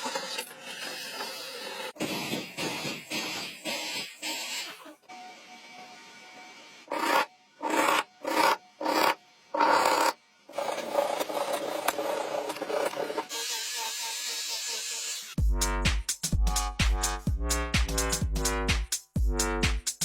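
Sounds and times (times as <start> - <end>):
music with a beat: 15.4 - 20.0.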